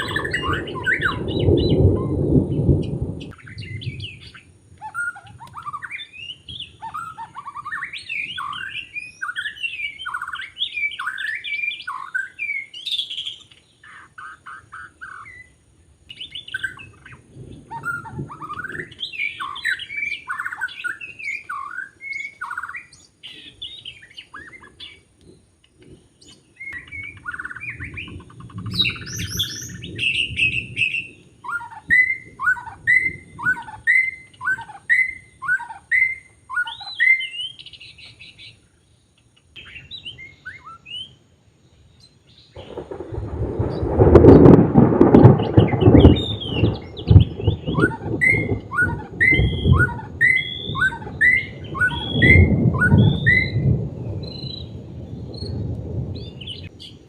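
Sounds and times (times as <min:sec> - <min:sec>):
bird singing whistled phrases: 0:00.0 - 0:02.2, 0:02.8 - 0:25.0, 0:26.2 - 0:38.6, 0:39.6 - 0:41.2, 0:45.4 - 0:55.6
low rumble: 0:00.0 - 0:04.7.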